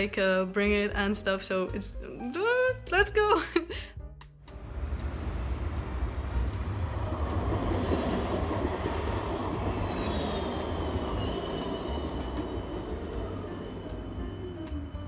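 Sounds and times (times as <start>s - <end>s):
vehicle rumbling: 4.6s - 11.4s.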